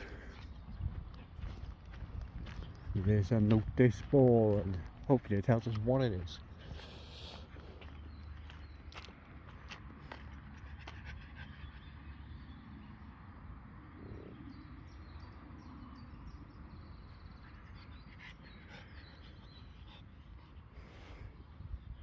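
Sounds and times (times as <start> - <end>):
dog panting: 10.0 - 12.4, 16.7 - 21.6.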